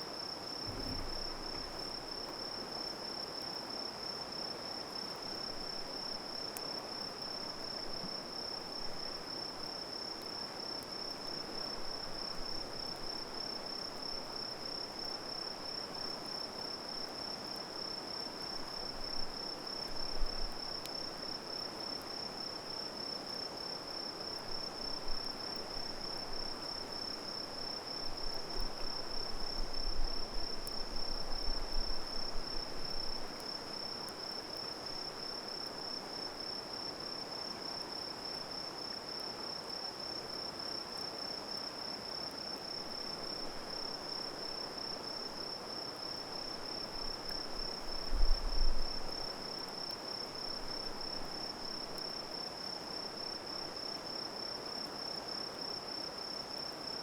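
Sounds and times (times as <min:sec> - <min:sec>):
low rumbling bumps: 0:00.6 - 0:02.0.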